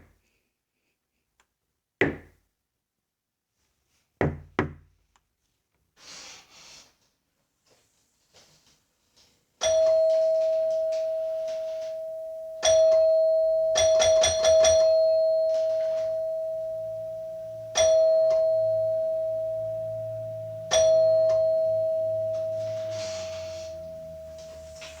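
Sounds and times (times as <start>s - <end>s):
doorbell chime ringing: 9.6s - 25.0s.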